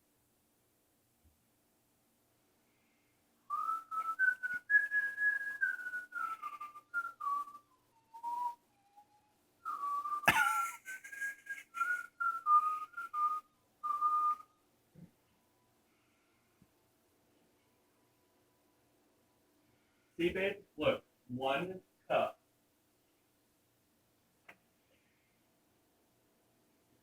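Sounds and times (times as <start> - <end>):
person whistling a tune: 3.5 - 14.5.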